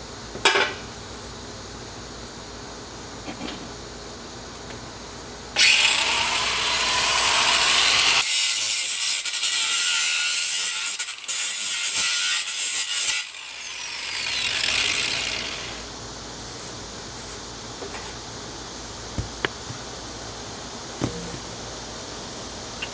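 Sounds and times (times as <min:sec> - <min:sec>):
angle grinder cutting steel: 0:05.6 - 0:15.8.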